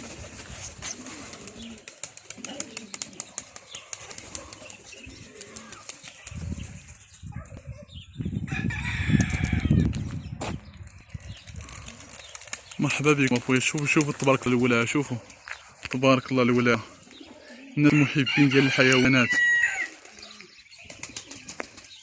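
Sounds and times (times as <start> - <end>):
birds shuffling with ticks: 0.0 - 7.0, 11.3 - 16.0
wings flapping: 0.0 - 7.0, 10.8 - 15.5, 20.8 - 22.0
caged birds chirping: 0.0 - 22.0
bird calls: 0.9 - 8.3, 10.2 - 22.0.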